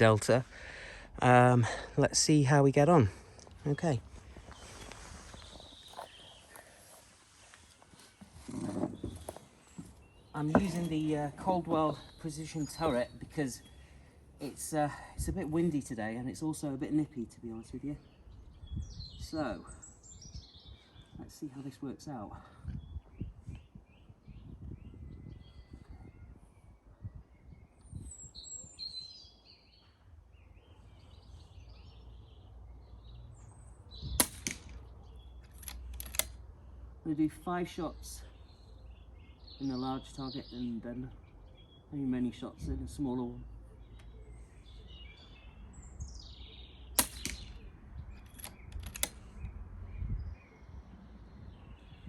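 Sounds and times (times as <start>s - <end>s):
small birds chirping: 0.0s - 52.0s
wind rumble on microphone: 18.4s - 19.4s, 22.6s - 29.0s, 33.9s - 34.3s, 47.6s - 52.0s
silenced air rifle shot: 34.0s - 34.9s, 46.9s - 47.7s
sharp clicks: 34.2s - 36.4s, 47.0s - 47.6s, 48.2s - 49.6s
light clicks: 35.4s - 36.4s, 48.2s - 49.3s.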